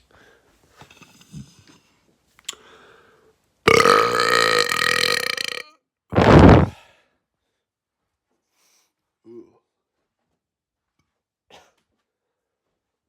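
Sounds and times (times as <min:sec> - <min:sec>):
person belching: 0:03.7 - 0:05.6, 0:06.2 - 0:06.7.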